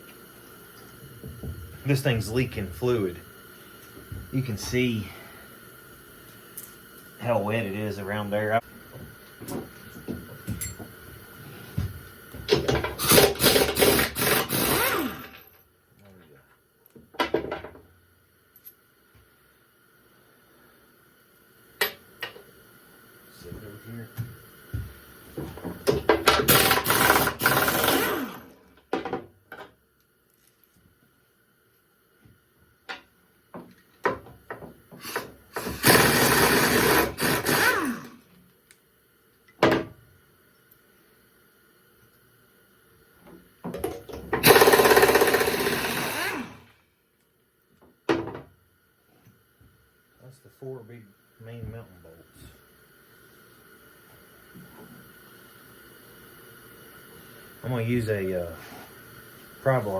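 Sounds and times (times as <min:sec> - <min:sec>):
handheld power tool whining: 0:12.6 - 0:15.4, 0:26.3 - 0:28.6, 0:35.0 - 0:38.2, 0:44.4 - 0:46.8.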